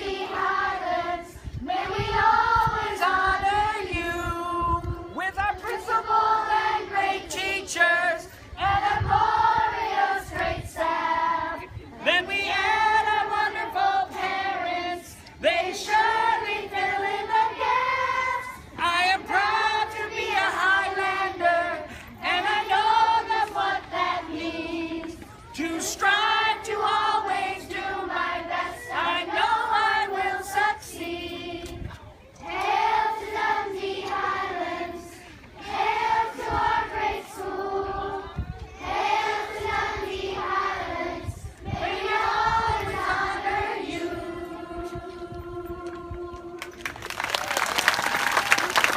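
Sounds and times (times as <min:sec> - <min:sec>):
children singing together: 0:00.0 - 0:01.4, 0:12.4 - 0:18.6.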